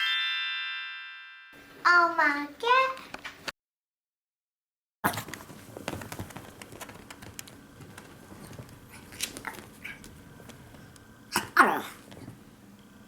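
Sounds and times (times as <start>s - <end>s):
faint rustling: 5.2s - 11.2s.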